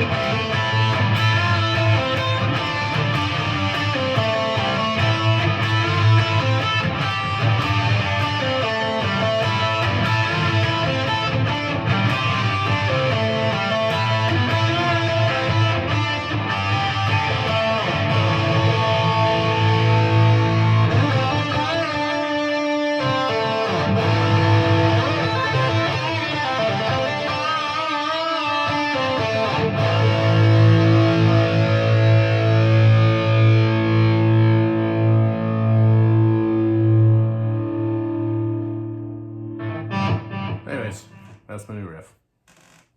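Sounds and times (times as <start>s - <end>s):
high-gain electric guitar riff: 0.0s - 41.8s.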